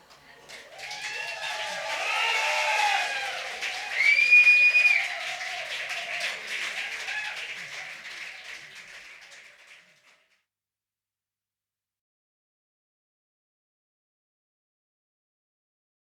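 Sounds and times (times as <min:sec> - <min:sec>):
audience applauding and cheering: 0:00.1 - 0:10.2
loud whistle: 0:01.2 - 0:06.2.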